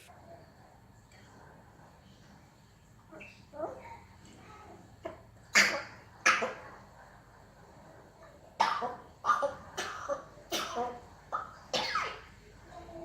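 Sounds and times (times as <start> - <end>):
parrot imitating coughs: 8.6 - 12.4.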